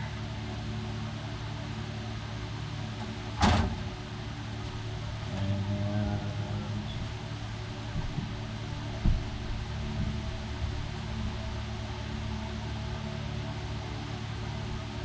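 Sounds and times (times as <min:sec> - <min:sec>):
machine hum: 0:00.0 - 0:15.0
loud clunk: 0:03.4 - 0:04.0.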